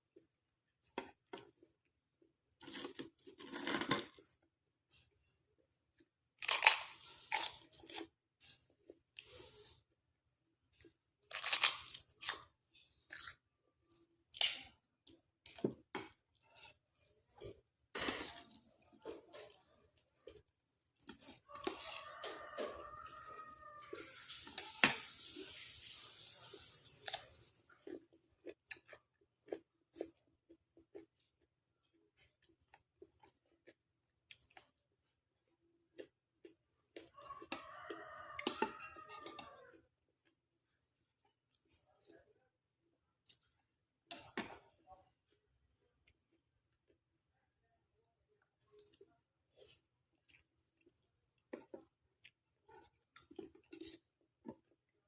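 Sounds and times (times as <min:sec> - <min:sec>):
chewing and mouth noise: 0:46.0 - 0:55.0.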